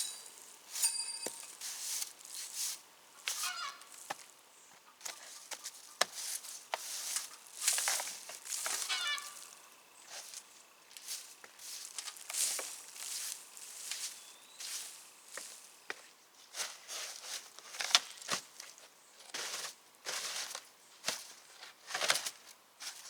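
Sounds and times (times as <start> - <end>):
bird calls: 3.2 - 4.0, 8.7 - 10.1
rustling: 5.1 - 15.7.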